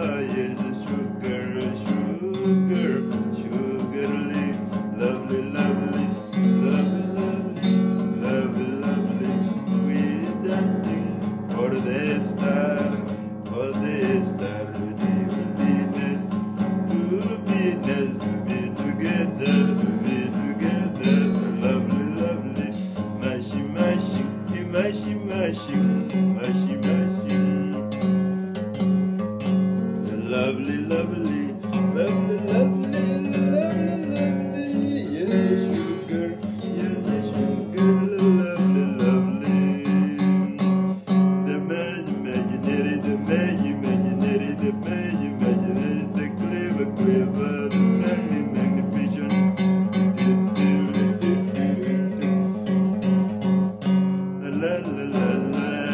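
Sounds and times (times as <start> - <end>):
acoustic guitar music: 0.0 - 55.9.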